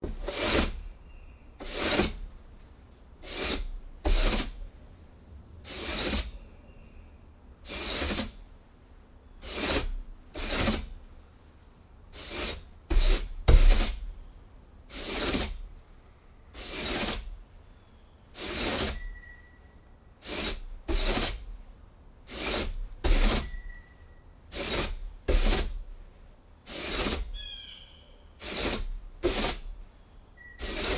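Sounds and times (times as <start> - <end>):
broom sweeping wooden boards: 0.0 - 4.7, 5.6 - 6.4, 7.6 - 8.4, 9.4 - 14.1, 14.9 - 15.8, 16.6 - 17.4, 18.3 - 19.2, 20.2 - 21.6, 22.3 - 23.8, 24.5 - 26.0, 26.6 - 27.6, 28.4 - 29.8, 30.5 - 30.9.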